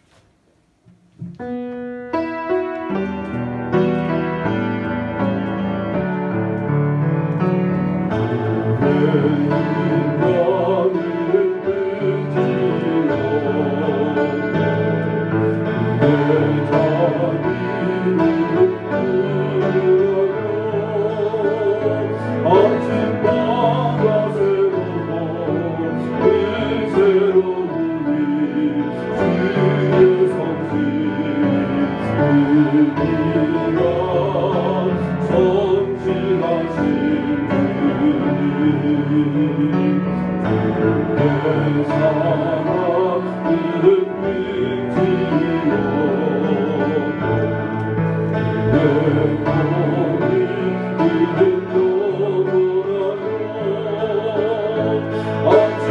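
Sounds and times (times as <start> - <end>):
hymn on keyboard: 1.3 - 55.9
person singing: 15.7 - 47.8, 48.5 - 55.9.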